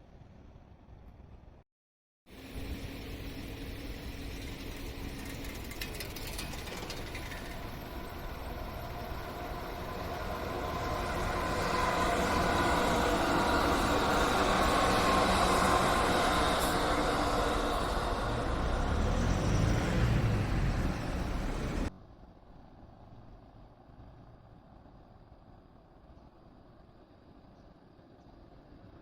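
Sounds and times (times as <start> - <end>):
train running rumble: 2.3 - 21.9.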